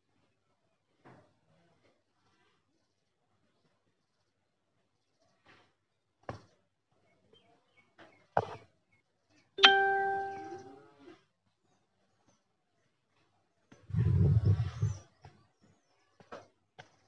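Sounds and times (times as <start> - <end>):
bell-like tone ringing: 9.6 - 10.7.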